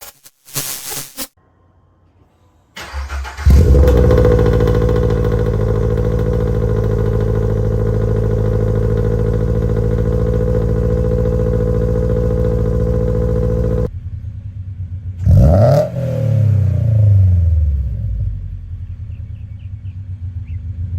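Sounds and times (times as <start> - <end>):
engine revving: 2.8 - 13.9, 15.2 - 18.4
car engine starting: 2.8 - 20.9
car engine idling: 3.2 - 15.2.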